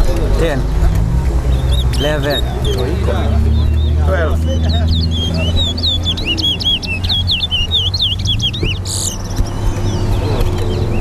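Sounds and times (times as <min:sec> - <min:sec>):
finch singing whistled notes: 0:01.5 - 0:11.0.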